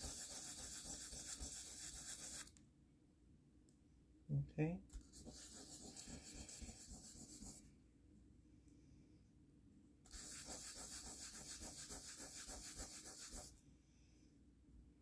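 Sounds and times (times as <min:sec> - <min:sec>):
sandpaper rasping on resin: 0:00.0 - 0:02.5, 0:05.1 - 0:07.6, 0:10.1 - 0:13.5.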